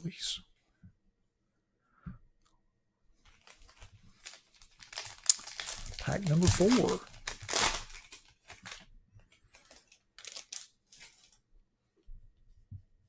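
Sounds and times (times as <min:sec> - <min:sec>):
wrapper crinkling: 0:03.2 - 0:11.4
wrapper ripping: 0:03.3 - 0:08.9, 0:09.5 - 0:11.4.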